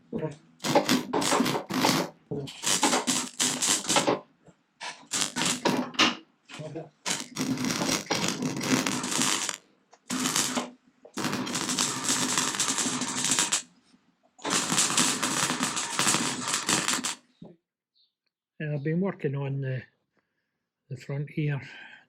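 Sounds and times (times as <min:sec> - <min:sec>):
welder arc crackling: 0:00.6 - 0:04.2, 0:04.8 - 0:13.7, 0:14.4 - 0:17.3.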